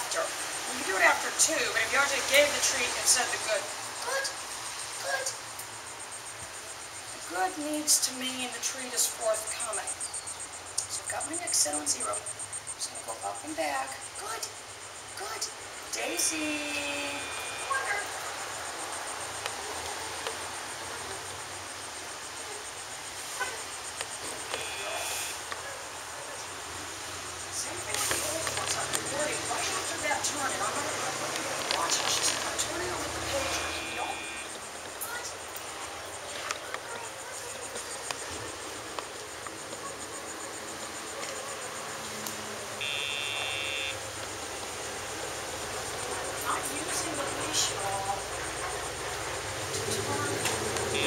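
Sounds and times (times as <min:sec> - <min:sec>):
insects chirping: 0:00.0 - 0:51.0
two-tone electronic beep: 0:16.9 - 0:17.9, 0:24.5 - 0:25.4, 0:33.4 - 0:34.5, 0:42.8 - 0:44.0.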